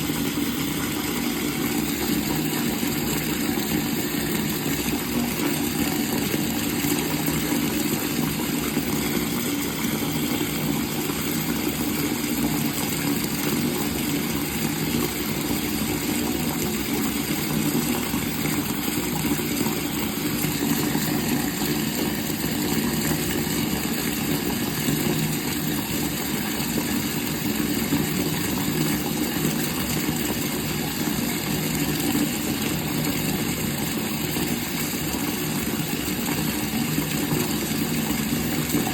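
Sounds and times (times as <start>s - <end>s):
water running from a faucet: 0.0s - 38.9s.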